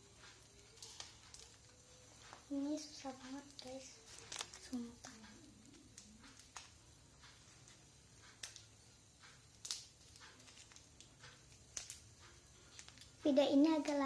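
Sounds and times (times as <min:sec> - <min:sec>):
packaging crinkling and clicking: 0:00.7 - 0:01.8, 0:03.5 - 0:06.8, 0:09.5 - 0:13.2.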